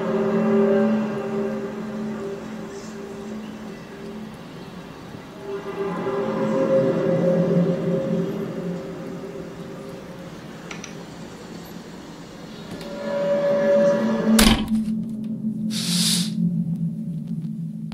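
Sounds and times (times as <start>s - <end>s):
low steady droning: 0.0s - 17.9s
short high hiss: 15.7s - 16.4s.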